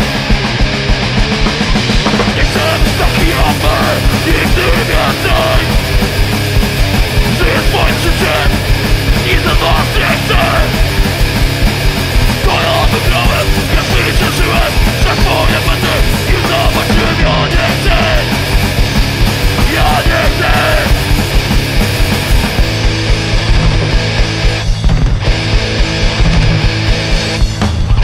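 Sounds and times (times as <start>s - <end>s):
hardcore punk band playing: 0.0s - 28.0s
shouted vocals: 2.4s - 5.8s, 7.3s - 8.6s, 9.2s - 10.8s, 12.4s - 18.5s, 19.5s - 21.1s.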